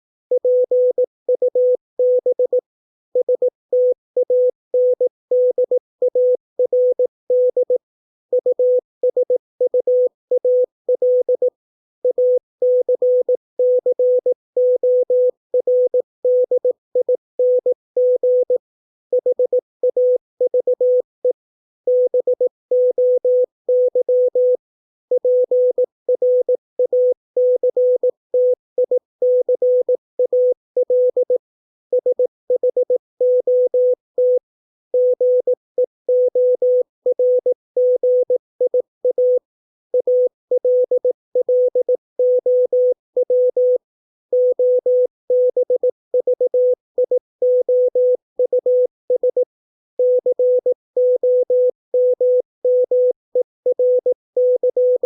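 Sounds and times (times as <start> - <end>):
morse code tone: 50.0 - 55.0.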